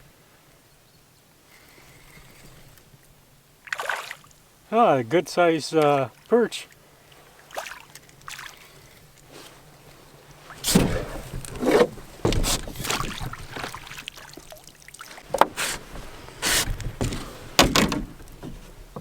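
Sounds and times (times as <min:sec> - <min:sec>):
water splashing: 0:03.6 - 0:05.0, 0:05.7 - 0:18.2
fish bumping and rustling in boat: 0:08.0 - 0:19.0.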